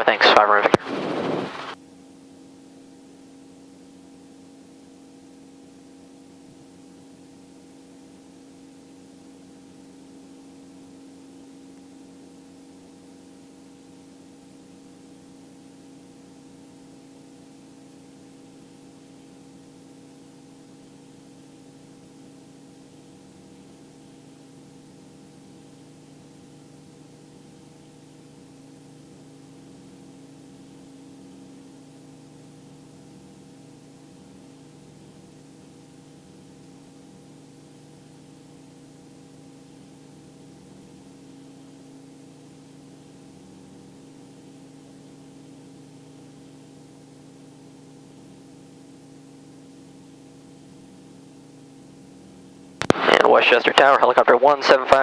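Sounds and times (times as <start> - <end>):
helicopter hum through intercom: 0.0 - 1.8, 53.0 - 55.0.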